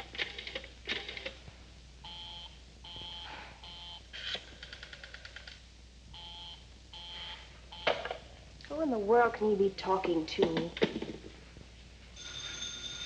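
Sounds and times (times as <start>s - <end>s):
telephone tones beeping: 2.1s - 4.0s, 6.2s - 8.2s, 12.2s - 13.0s
telephone bell ringing: 12.2s - 13.0s.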